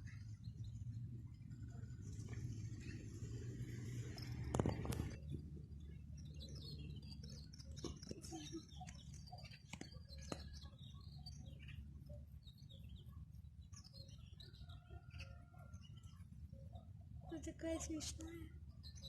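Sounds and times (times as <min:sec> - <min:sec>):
low outdoor rumble: 0:00.0 - 0:14.4
bird chirps and calls: 0:06.1 - 0:19.0.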